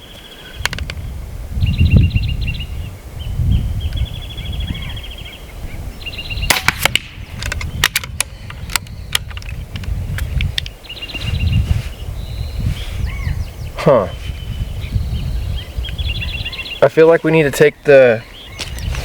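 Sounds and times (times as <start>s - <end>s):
wind rumble on microphone: 0.0s - 19.0s
air pistol shot: 6.5s - 8.2s
gun handling clicks: 6.5s - 10.7s
high chirping trills: 10.0s - 18.9s.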